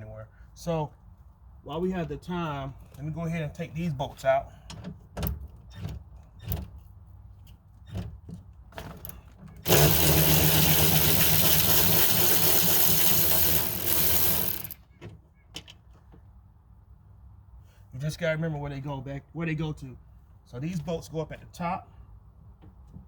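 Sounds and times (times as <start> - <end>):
power driver running: 9.6 - 14.8.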